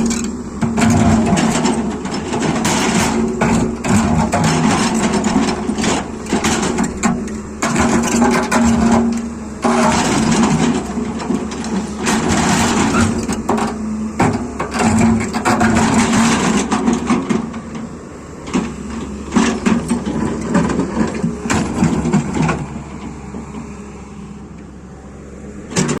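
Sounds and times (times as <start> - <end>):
knocks and scrapes: 0.0 - 17.6
excavator engine hum: 0.0 - 26.0.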